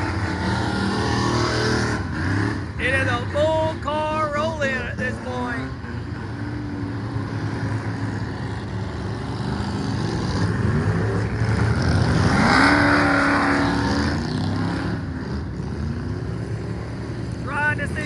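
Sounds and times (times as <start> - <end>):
race car engines revving: 0.0 - 18.0.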